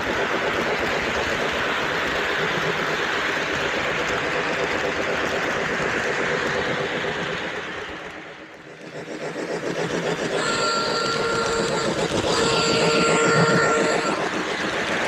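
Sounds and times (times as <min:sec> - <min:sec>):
model train rattling on track: 0:00.0 - 0:15.0
steam whistle blasts: 0:10.3 - 0:14.7.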